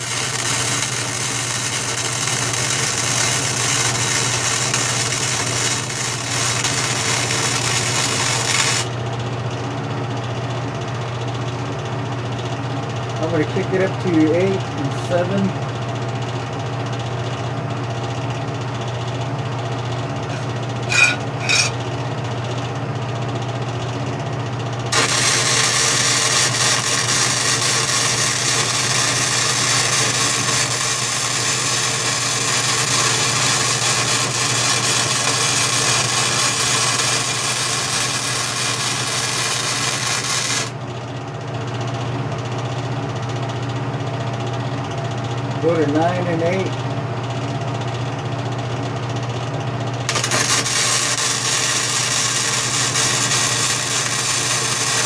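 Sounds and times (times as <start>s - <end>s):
welder low hum: 0.0s - 8.9s, 20.3s - 21.8s, 24.9s - 40.8s, 50.1s - 55.0s
welding arc crackling and hissing: 0.0s - 8.9s, 20.3s - 21.7s, 24.9s - 40.8s, 50.1s - 55.0s.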